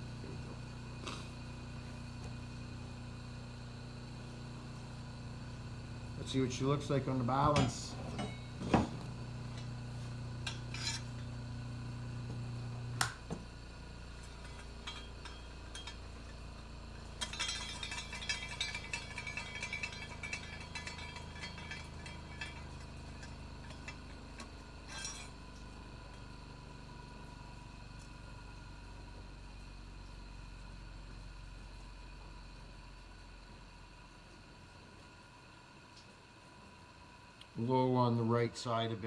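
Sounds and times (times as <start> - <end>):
low steady hum: 0.0 - 34.4
metal blade clinking and scraping: 7.5 - 11.5, 14.2 - 26.2.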